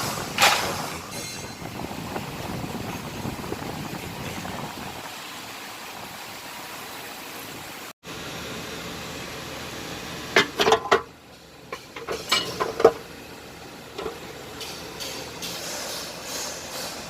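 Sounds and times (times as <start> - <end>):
metal tools clinking and clattering: 11.7 - 13.0.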